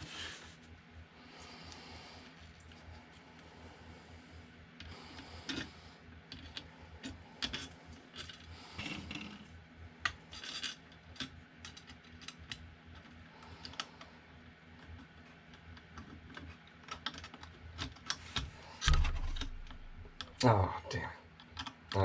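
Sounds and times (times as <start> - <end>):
metal and plastic parts clicking: 14.8 - 20.4.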